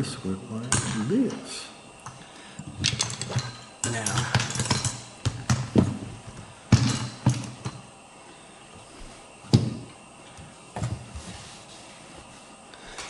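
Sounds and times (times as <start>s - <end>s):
small parts clicking and knocking: 2.0s - 6.0s.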